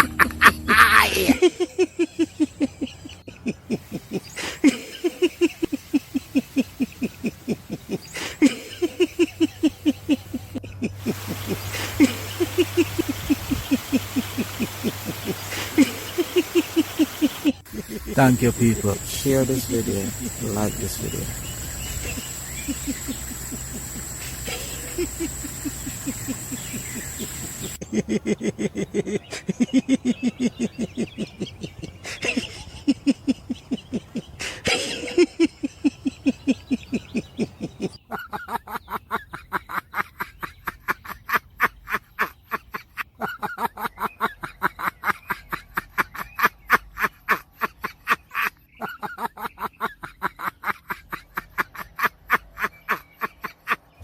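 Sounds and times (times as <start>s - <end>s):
rapid high call pulses: 13.7s - 27.8s
steady high whine: 17.7s - 27.8s
low animal calls: 18.2s - 27.8s.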